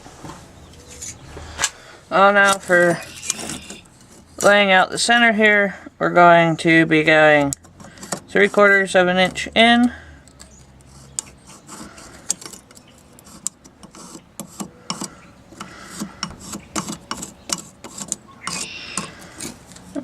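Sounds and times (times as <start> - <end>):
brief scratch on steel: 2.8 - 4.1, 10.9 - 19.6
tools clicking on steel: 10.2 - 20.0.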